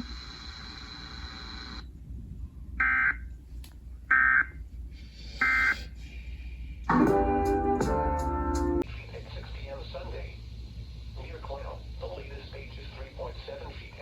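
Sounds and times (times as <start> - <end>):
steady radio hiss: 0.0 - 1.9, 8.8 - 14.0.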